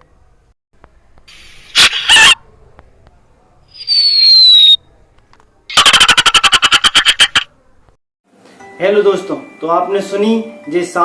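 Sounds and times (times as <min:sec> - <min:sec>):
falling whistle: 0:01.7 - 0:02.4, 0:03.7 - 0:04.8.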